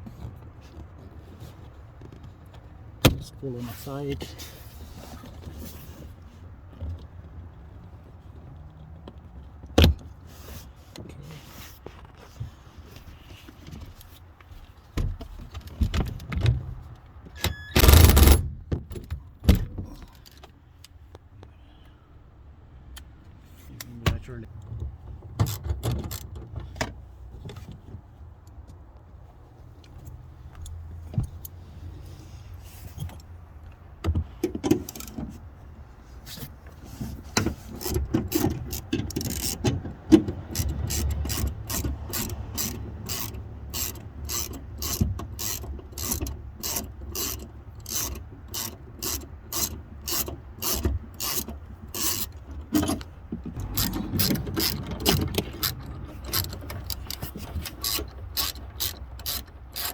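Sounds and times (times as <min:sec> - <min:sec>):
ratchet wrench clicking: 0:37.8 - 0:39.7, 0:40.5 - 0:52.4, 0:53.6 - 0:59.9.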